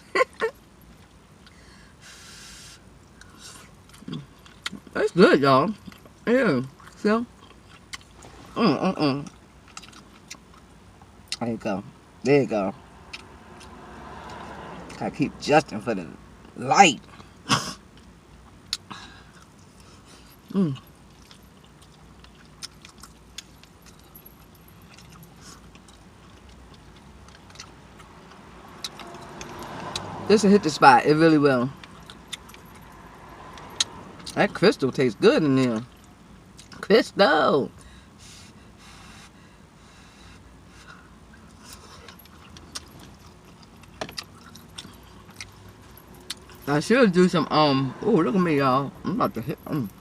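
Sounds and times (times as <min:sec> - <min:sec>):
low steady hum: 0:00.0 - 0:50.0
person chewing with mouth smacking: 0:03.1 - 0:04.9, 0:05.8 - 0:08.6, 0:09.2 - 0:11.4, 0:17.0 - 0:30.1, 0:31.8 - 0:32.8, 0:40.9 - 0:46.6.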